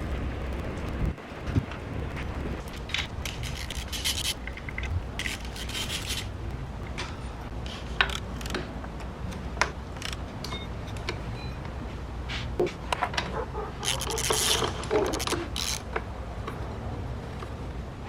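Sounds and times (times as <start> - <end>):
hand tool rasping and scraping: 3.3 - 4.4, 5.2 - 6.3.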